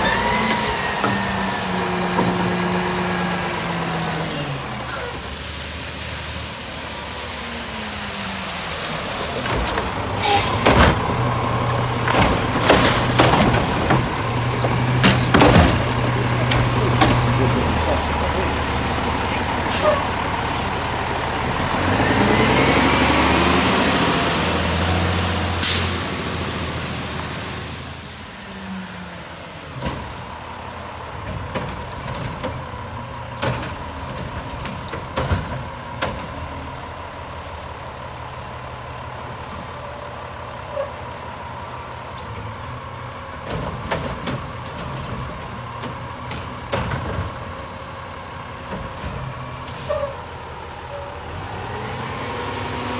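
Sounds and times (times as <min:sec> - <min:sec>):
garbage truck engine: 0:00.0 - 0:52.9
clanks and knocks: 0:10.4 - 0:18.3, 0:33.4 - 0:36.5, 0:43.4 - 0:47.6.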